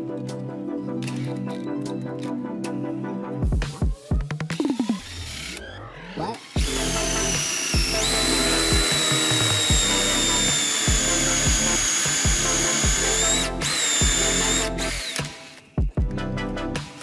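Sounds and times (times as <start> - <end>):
electronic music with heavy beat: 3.3 - 14.4
electric drill whining: 4.5 - 15.8.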